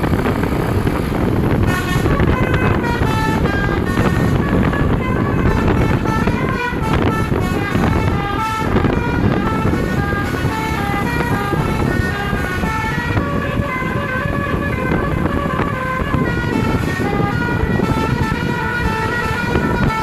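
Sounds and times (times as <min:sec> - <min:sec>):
heavy low rumble: 0:00.0 - 0:20.0
multi-tone air horn tune: 0:00.4 - 0:20.0.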